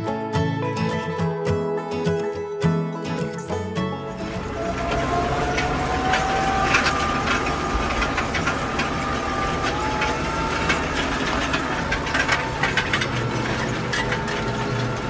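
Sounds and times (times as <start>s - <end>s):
tractor engine running: 4.0s - 15.0s
machinery rattles and clicks: 4.1s - 15.0s.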